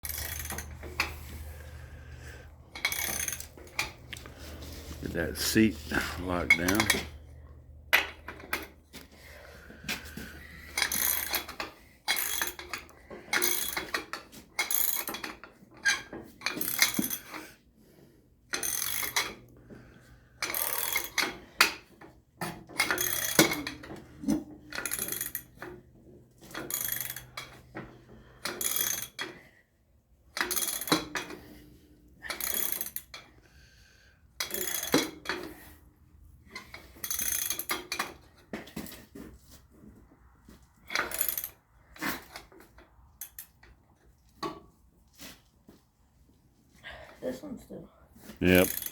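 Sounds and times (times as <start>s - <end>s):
ratchet wrench strokes: 0.0s - 1.2s, 22.9s - 23.6s.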